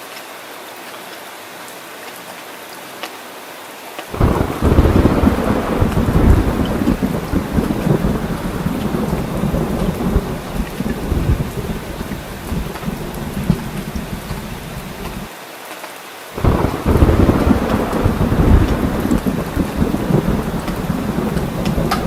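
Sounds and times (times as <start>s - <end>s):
heavy rain: 0.0s - 22.0s
thunder rumbling: 4.1s - 15.3s, 16.4s - 22.0s.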